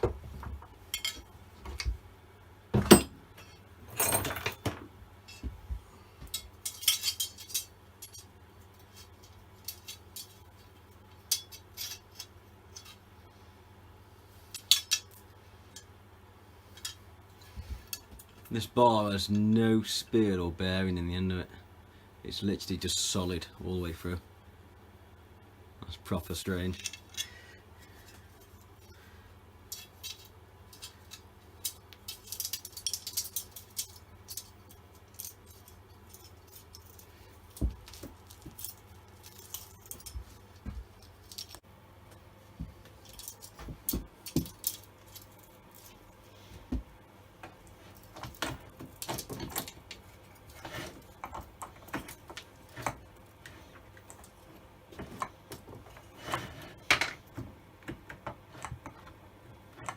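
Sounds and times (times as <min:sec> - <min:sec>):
metal parts clinking and rattling: 0:02.9 - 0:05.5, 0:06.3 - 0:13.0, 0:14.5 - 0:15.9, 0:16.8 - 0:18.5, 0:26.7 - 0:29.0, 0:29.7 - 0:41.6, 0:43.0 - 0:46.4, 0:47.5 - 0:57.3.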